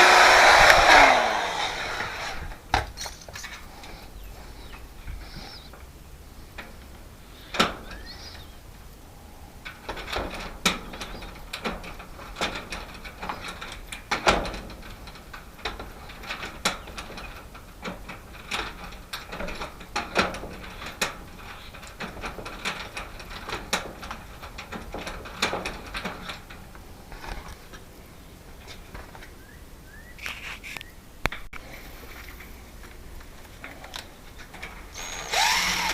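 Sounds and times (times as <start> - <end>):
small metal parts handled: 2.8 - 4.0
clicks and knocks of hand work: 9.6 - 27.8.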